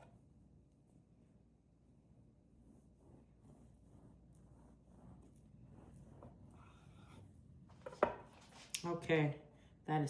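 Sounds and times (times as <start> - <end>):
bread knife sawing through loaf: 2.4 - 7.6.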